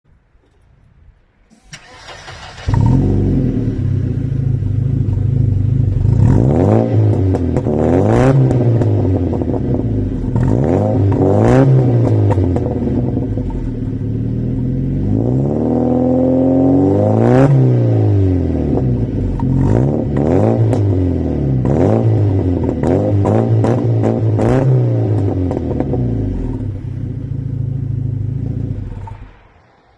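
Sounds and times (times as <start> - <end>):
car engine starting and revving: 1.5 - 29.9.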